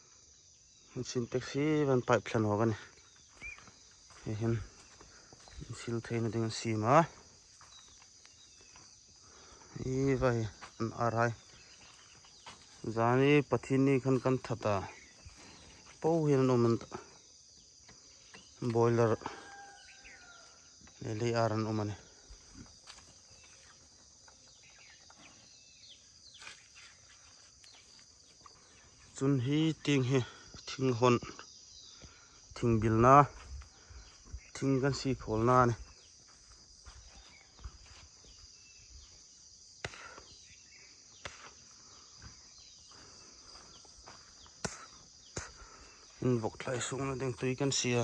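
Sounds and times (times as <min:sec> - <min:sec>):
high insect drone: 0:00.0 - 0:48.0.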